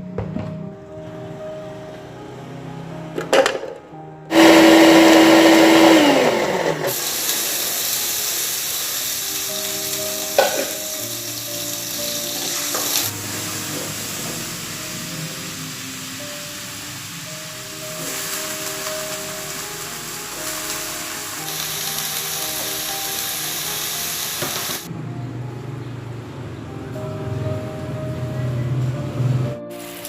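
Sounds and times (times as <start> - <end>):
electric kitchen blender running: 4.3 - 9.2
steady hiss: 6.9 - 24.9.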